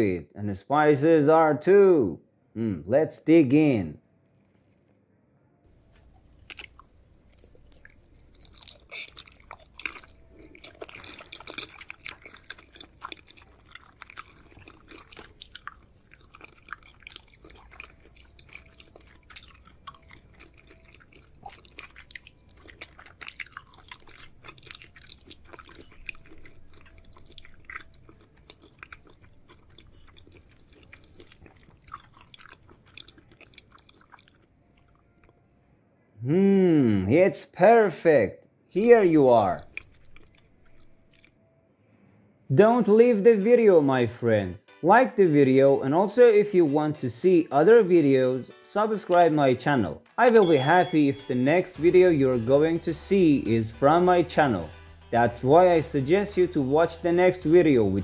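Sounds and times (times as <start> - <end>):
person chewing crispy chicken: 6.0 - 35.4, 39.5 - 41.3.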